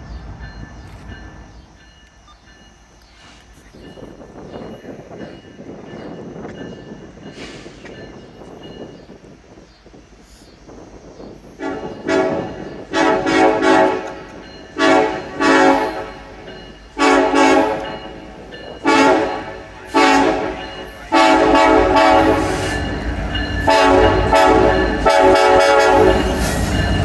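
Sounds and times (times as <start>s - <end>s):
low train rumble: 0.0s - 27.0s
locomotive air horn blasts: 11.6s - 23.0s, 23.6s - 26.7s.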